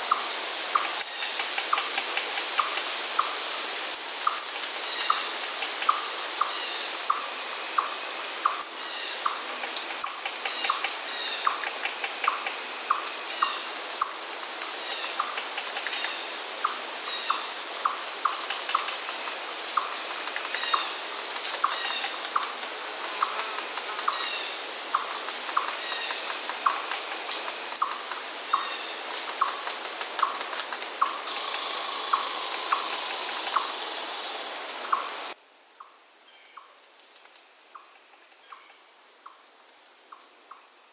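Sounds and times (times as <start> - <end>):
insects chirping: 0.0 - 36.8.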